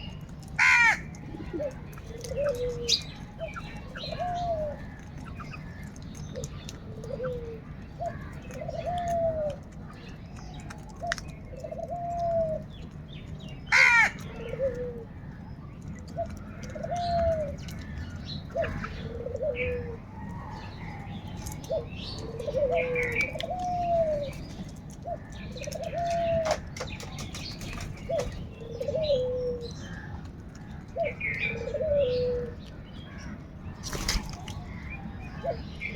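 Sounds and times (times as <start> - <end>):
dove cooing: 0.6 - 9.7, 11.0 - 12.8, 13.7 - 15.3, 16.1 - 30.1, 30.9 - 32.7.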